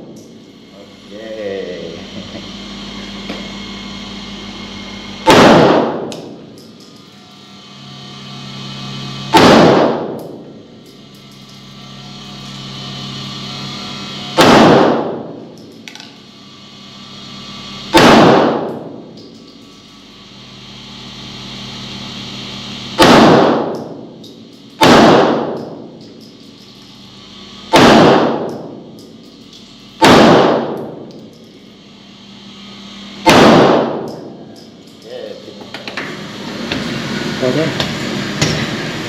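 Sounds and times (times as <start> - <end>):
pistol shots: 5.2 - 6.0, 9.3 - 10.2, 14.4 - 15.1, 18.0 - 18.7, 23.0 - 23.7, 24.8 - 25.6, 27.7 - 28.5, 30.0 - 30.9, 33.2 - 34.1.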